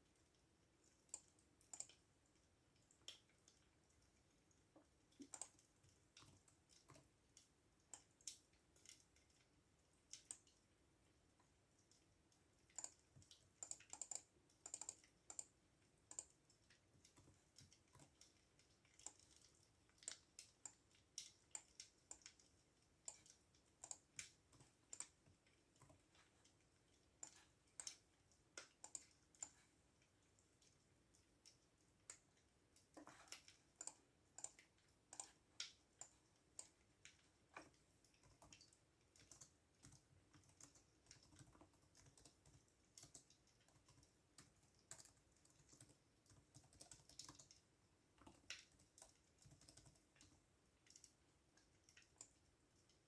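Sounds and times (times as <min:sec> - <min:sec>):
computer keyboard typing: 0:01.1 - 0:02.0, 0:05.2 - 0:07.1, 0:12.7 - 0:26.3, 0:32.9 - 0:36.8, 0:37.6 - 0:52.5.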